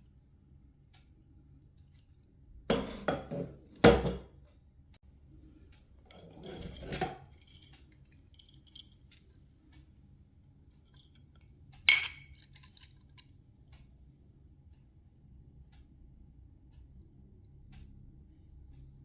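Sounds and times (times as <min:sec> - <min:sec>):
sharp metallic clink: 0:11.9 - 0:13.2.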